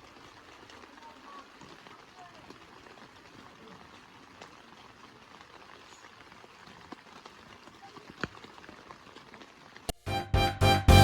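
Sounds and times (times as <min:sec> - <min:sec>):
water drips: 0:00.0 - 0:10.0
faint rain patter: 0:00.0 - 0:11.0
music with guitar and drums: 0:10.0 - 0:11.0.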